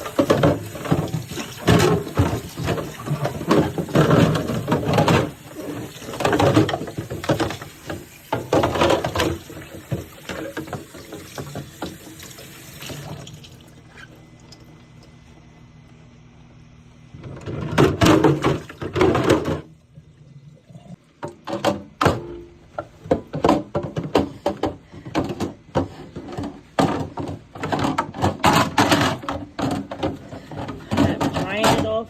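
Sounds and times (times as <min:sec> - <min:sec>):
bins knocking when set down: 0:00.0 - 0:12.0, 0:17.2 - 0:19.7, 0:21.2 - 0:32.0
plastic bins clattering: 0:00.0 - 0:12.0, 0:17.2 - 0:19.8, 0:21.2 - 0:32.0.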